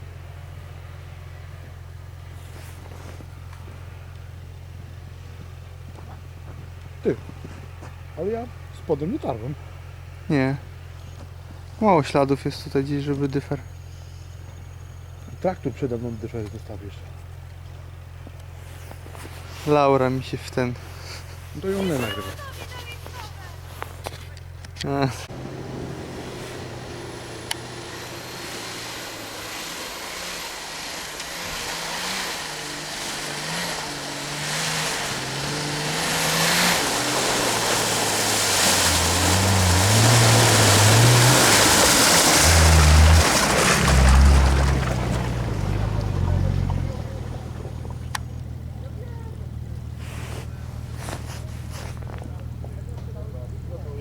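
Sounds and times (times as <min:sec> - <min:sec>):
off-road engine revving: 0:00.0 - 0:22.6, 0:24.4 - 0:54.0
mud and water splashing: 0:25.3 - 0:52.6.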